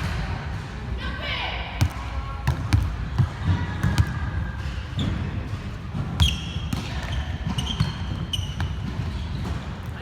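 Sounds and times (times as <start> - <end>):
volleyball hits: 1.8 - 10.0
shoes squeaking on court floor: 4.9 - 10.0.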